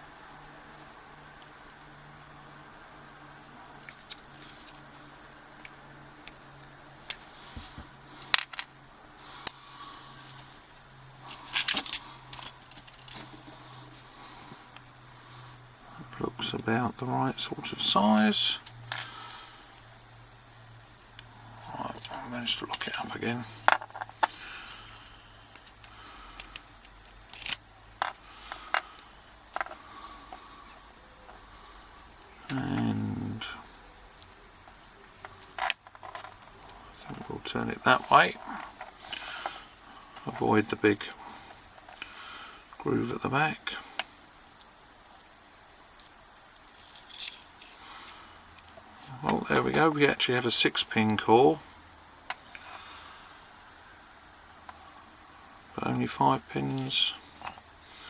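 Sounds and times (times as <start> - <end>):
faint steady hum: 0.0 - 58.0
small metal clicks and clinks: 11.3 - 13.3, 21.9 - 29.8, 35.3 - 36.8, 46.0 - 47.7, 56.8 - 58.0.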